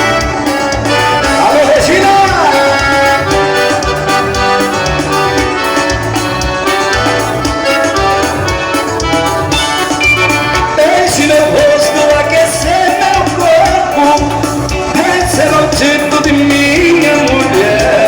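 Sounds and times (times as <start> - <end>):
latin band music: 0.0 - 18.0
person singing: 0.9 - 5.9, 10.6 - 18.0.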